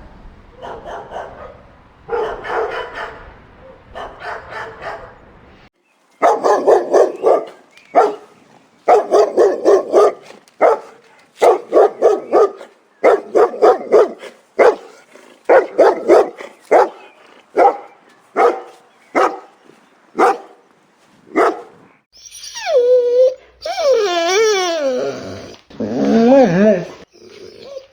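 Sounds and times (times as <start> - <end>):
dog barking: 0.5 - 5.3, 6.2 - 19.6, 20.2 - 20.7, 21.3 - 22.0.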